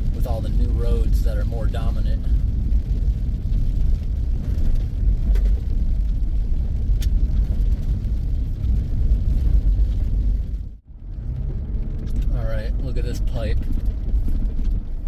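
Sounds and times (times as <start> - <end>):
vehicle rumbling on gravel road: 0.0 - 15.0
light ticks: 7.0 - 7.3.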